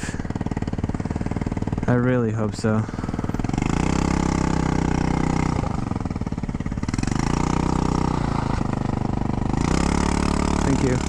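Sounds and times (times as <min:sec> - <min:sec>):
scooter engine running: 0:00.0 - 0:11.0.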